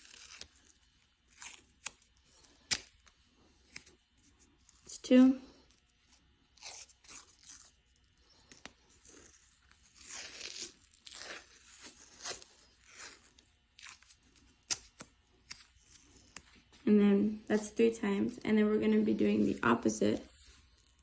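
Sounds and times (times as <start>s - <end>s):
adhesive tape pulled off roll: 0.0s - 3.1s, 8.4s - 16.4s.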